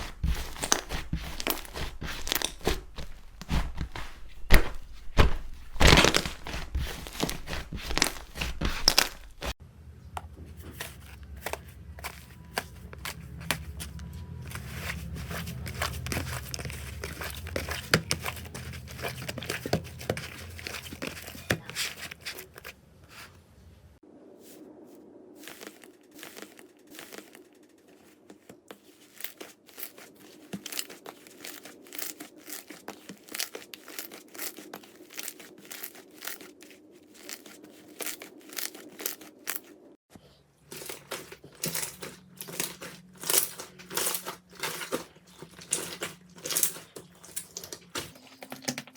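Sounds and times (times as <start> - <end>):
slime crackling and popping: 0.0 - 9.6.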